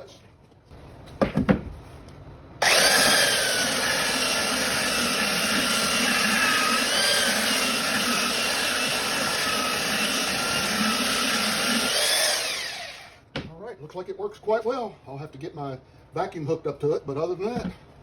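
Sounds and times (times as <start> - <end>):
belt sander motor whine: 2.6 - 13.2.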